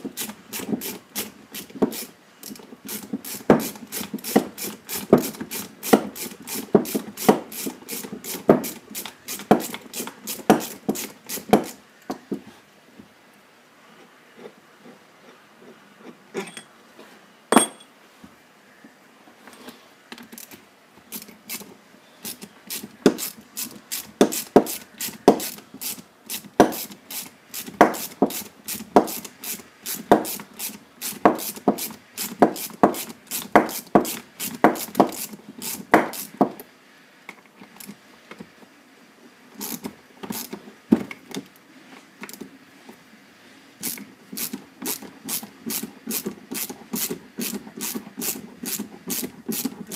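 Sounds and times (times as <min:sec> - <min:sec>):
hand tools clicking and knocking: 0:00.1 - 0:11.8, 0:17.5 - 0:17.9, 0:22.3 - 0:36.6, 0:43.8 - 0:49.9.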